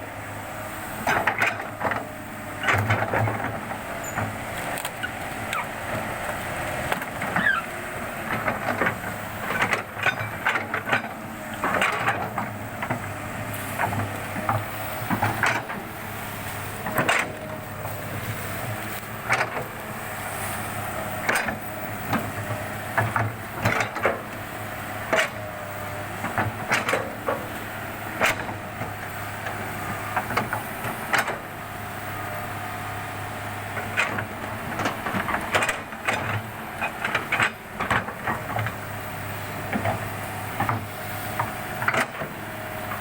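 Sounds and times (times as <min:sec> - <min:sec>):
excavator engine running: 0:00.0 - 0:43.0
brief squeal: 0:07.3 - 0:07.7.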